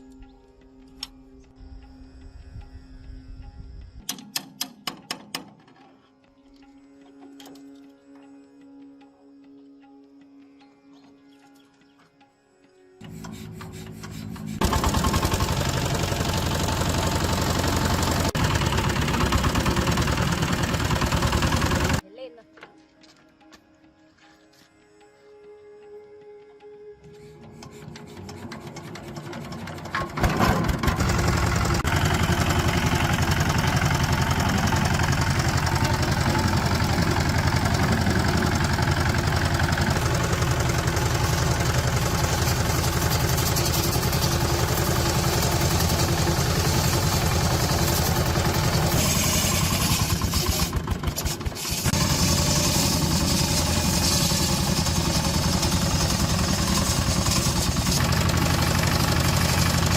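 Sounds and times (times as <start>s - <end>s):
diesel engine running: 13.0s - 22.0s, 27.5s - 59.9s.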